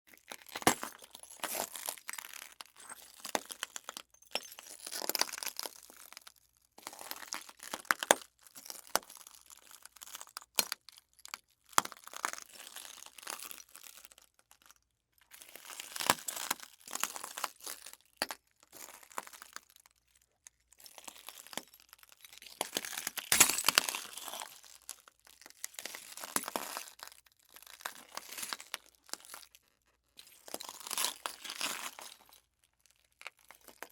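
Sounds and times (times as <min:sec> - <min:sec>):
footsteps crunching on broken glass: 0:00.2 - 0:06.0, 0:21.0 - 0:29.5, 0:30.2 - 0:32.4.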